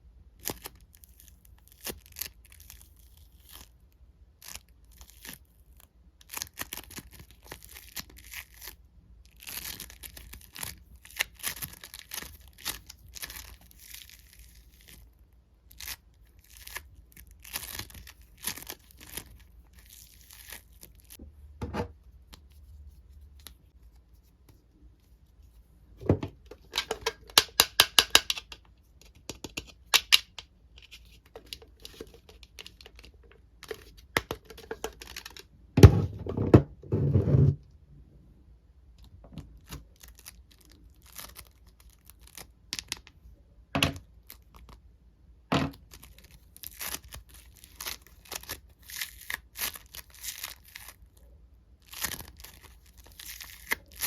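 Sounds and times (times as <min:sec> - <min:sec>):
toys crinkling and tearing: 0:06.2 - 0:21.2, 0:39.6 - 0:43.0, 0:45.7 - 0:54.0.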